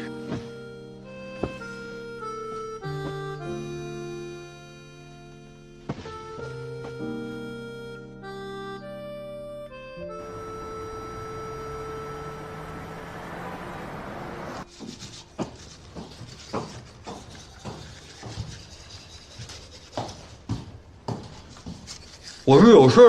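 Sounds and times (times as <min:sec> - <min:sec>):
soft background music: 0:00.0 - 0:15.4.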